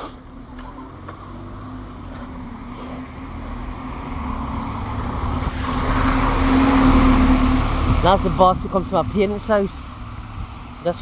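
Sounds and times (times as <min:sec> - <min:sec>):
bus engine drone: 0:00.0 - 0:11.0.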